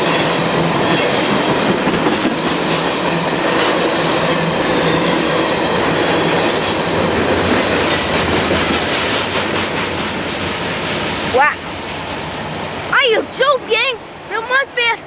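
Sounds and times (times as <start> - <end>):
freight train rolling past: 0.0 - 15.0.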